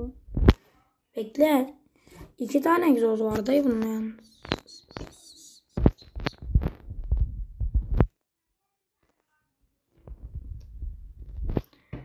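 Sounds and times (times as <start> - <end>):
low thumps and knocks: 5.8 - 8.1.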